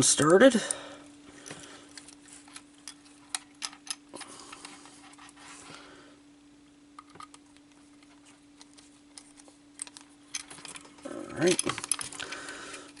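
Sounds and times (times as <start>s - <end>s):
steady low hum: 0.0s - 13.0s
clicks of plastic parts handled: 1.4s - 4.8s, 7.0s - 13.0s.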